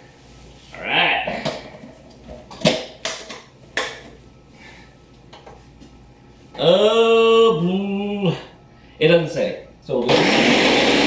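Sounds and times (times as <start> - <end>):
blender motor whining: 10.0 - 11.0.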